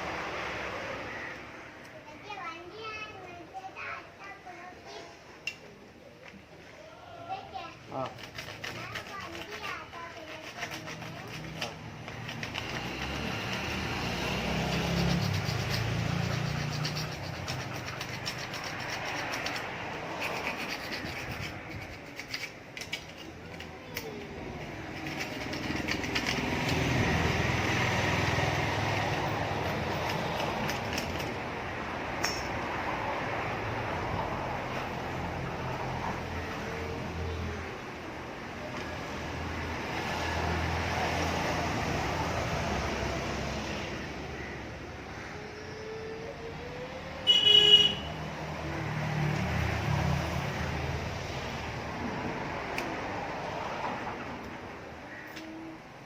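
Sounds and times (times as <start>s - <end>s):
road traffic rumble: 0.0s - 56.0s
vehicle horn toot: 47.2s - 48.2s.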